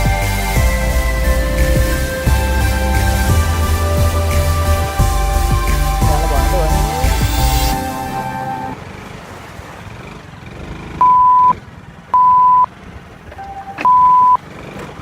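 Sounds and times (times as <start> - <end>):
low background rumble: 0.0 - 8.8
loud pure-tone beep: 11.0 - 11.6, 12.2 - 12.7, 13.4 - 14.4.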